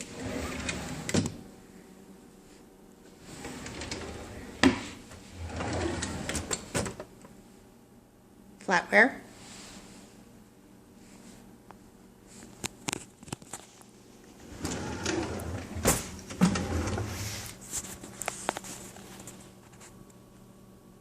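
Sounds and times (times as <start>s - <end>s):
drawers sliding and rattling: 0.0s - 1.4s, 3.2s - 7.1s, 14.4s - 17.6s.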